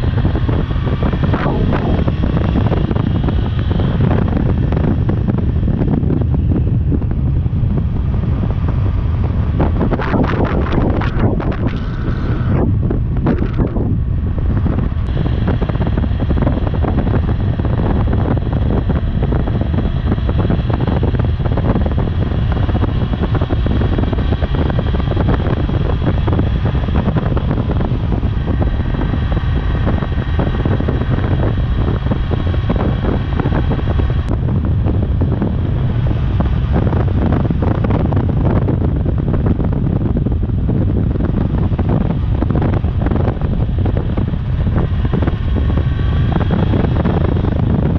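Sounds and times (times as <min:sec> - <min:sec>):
motorcycle engine running: 0:00.0 - 0:47.9
wind buffeting microphone: 0:00.0 - 0:47.9.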